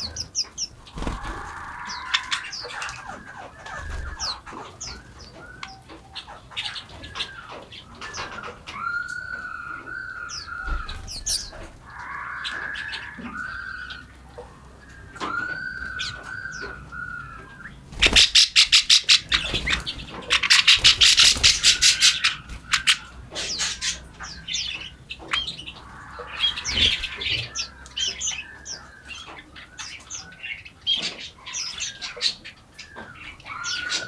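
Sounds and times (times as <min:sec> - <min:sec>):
rapid runs of bird pulses: 0:00.0 - 0:04.6, 0:15.8 - 0:27.8
forest birds chirping: 0:00.0 - 0:34.0.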